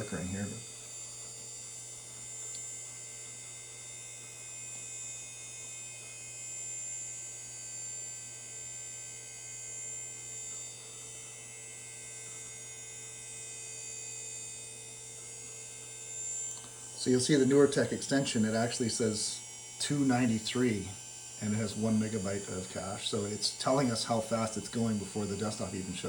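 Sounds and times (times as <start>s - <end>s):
computer fan humming: 0.0s - 26.0s.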